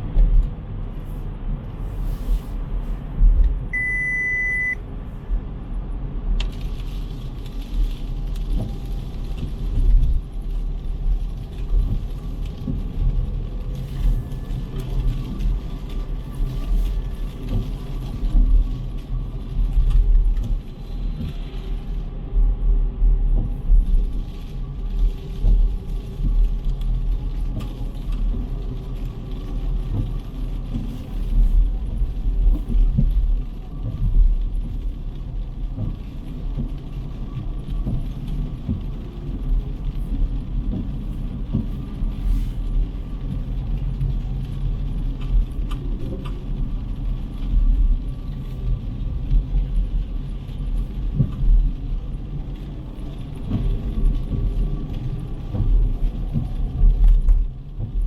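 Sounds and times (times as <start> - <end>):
electronic beep: 3.8 - 4.8.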